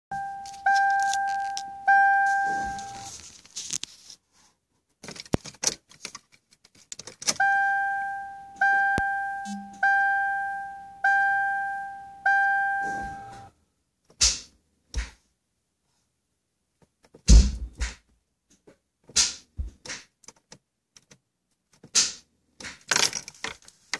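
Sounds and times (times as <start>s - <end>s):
car warning chime dings: 0.1s - 3.1s, 7.4s - 13.5s
loud thumps: 17.2s - 18.1s.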